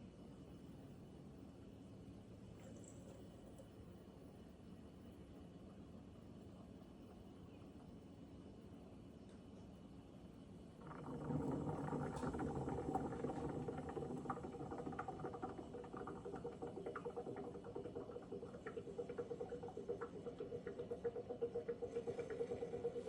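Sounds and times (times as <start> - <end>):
coffee maker gurgling and sputtering: 10.7 - 23.0.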